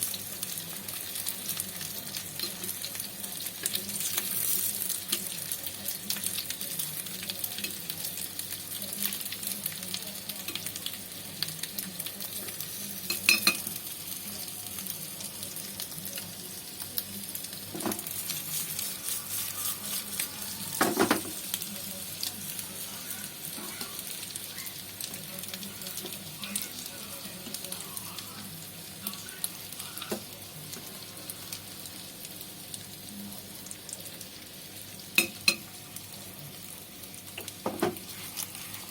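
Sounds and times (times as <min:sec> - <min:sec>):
tofu sizzling in a pan: 0:00.0 - 0:38.9.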